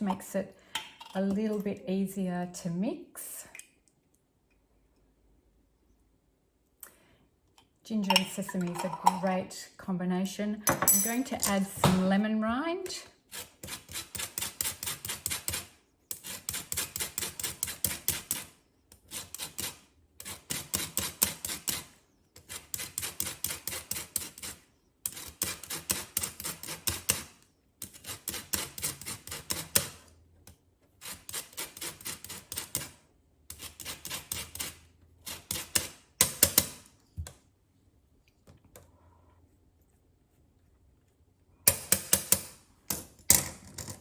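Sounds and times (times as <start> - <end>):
zester scraping lemon rind: 13.3 - 29.8, 31.0 - 36.2.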